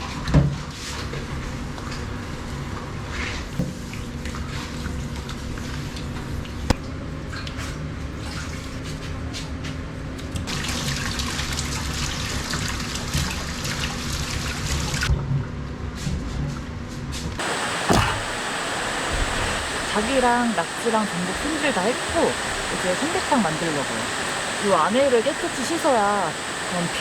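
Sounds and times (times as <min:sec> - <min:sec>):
water running from a tap: 0:10.5 - 0:15.0, 0:17.4 - 0:27.0
mountain stream rushing: 0:17.4 - 0:27.0.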